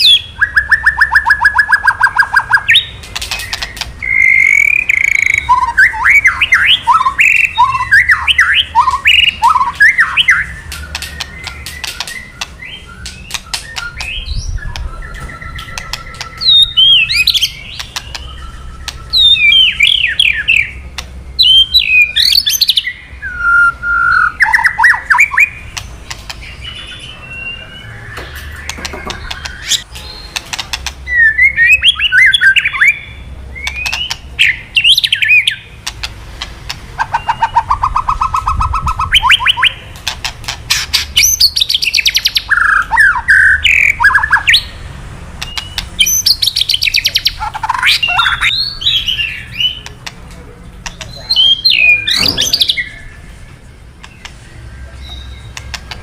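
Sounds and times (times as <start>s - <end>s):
bird singing: 0.0s - 36.2s, 36.9s - 56.0s
rapid crackling bird rattles: 3.0s - 4.0s.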